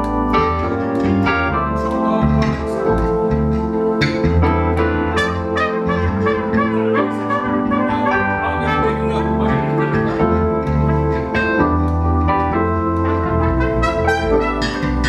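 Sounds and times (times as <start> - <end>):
brass horns: 0.0 - 15.0
live band playing: 0.0 - 15.0.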